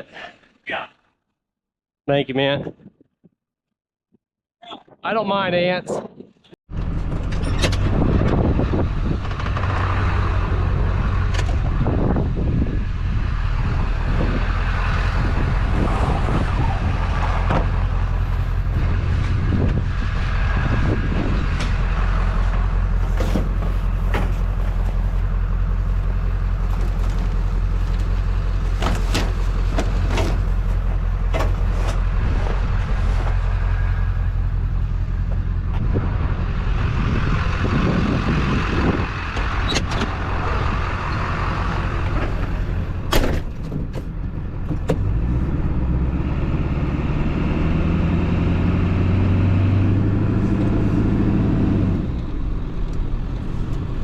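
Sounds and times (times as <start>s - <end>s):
knocks clanks and rattles: 6.0s - 10.2s, 26.6s - 33.5s, 42.0s - 45.3s
vehicle engine running: 16.6s - 54.0s.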